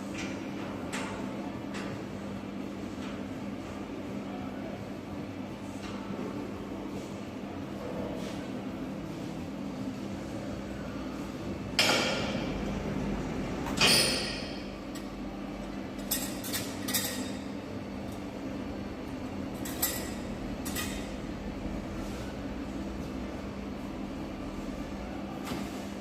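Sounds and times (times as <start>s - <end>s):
machine hum: 5.1s - 25.4s.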